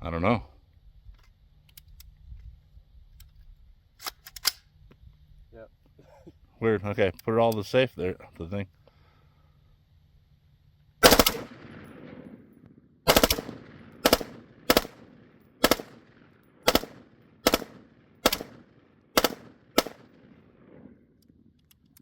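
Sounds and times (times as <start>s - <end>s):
rifle firing rapid bursts: 11.0s - 12.2s, 13.1s - 20.3s
gunshot echo: 11.0s - 21.0s.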